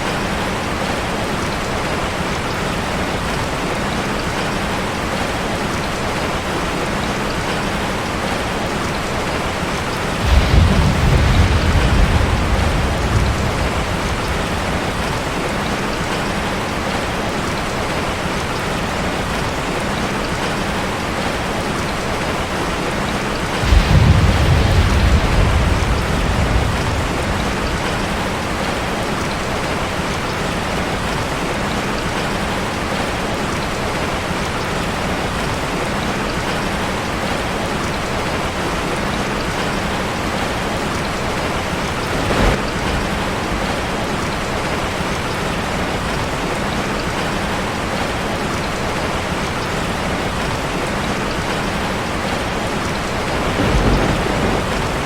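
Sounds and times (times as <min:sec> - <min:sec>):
steady rain on a street: 0:00.0 - 0:55.0
low rumble of thunder: 0:09.8 - 0:17.0, 0:23.1 - 0:33.0, 0:41.4 - 0:45.1, 0:53.0 - 0:55.0.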